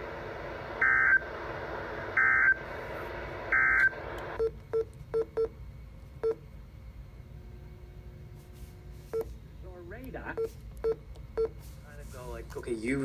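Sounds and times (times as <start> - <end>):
receiver hiss: 0.0 - 4.4.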